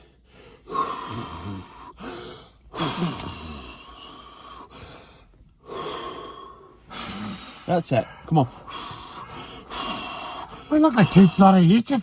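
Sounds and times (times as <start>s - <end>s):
person breathing heavily: 0.0s - 12.0s.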